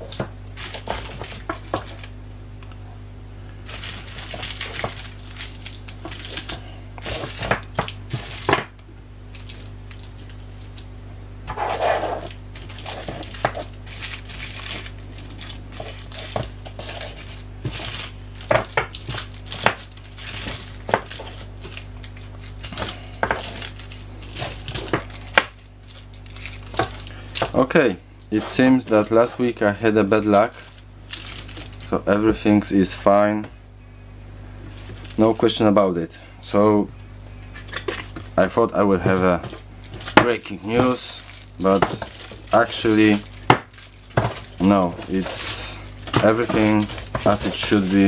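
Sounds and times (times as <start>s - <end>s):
packaging crinkling: 0.0s - 2.2s, 3.6s - 32.4s, 34.7s - 35.3s, 37.5s - 48.0s
tablets clicking and tapping: 38.7s - 48.0s.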